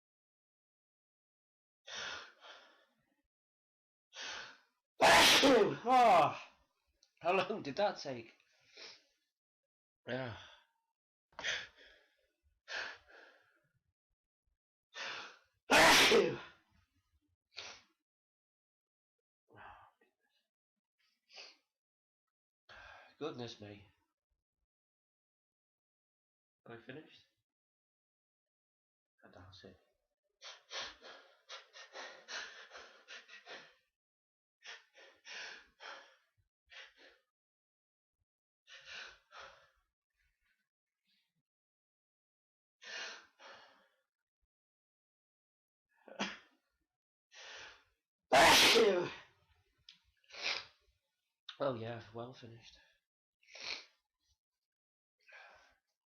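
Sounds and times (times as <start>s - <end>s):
person sneezing: 5.0s - 6.2s, 15.7s - 16.5s, 48.3s - 49.2s
breathy in-breaths: 55.2s - 55.8s.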